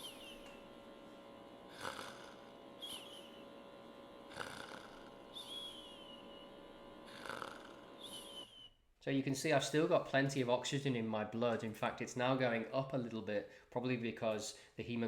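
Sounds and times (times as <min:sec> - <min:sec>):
man snoring faintly: 0:00.0 - 0:08.6
falling whistle-like tone: 0:02.8 - 0:03.5, 0:05.3 - 0:06.6, 0:08.0 - 0:08.8.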